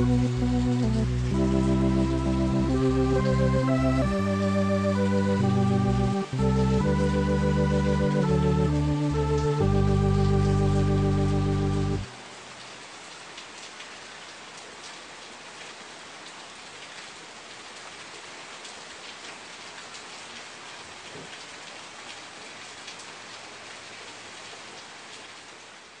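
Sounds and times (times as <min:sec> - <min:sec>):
rain drop ticks: 0:00.0 - 0:13.9
steady rain falling: 0:00.0 - 0:26.0.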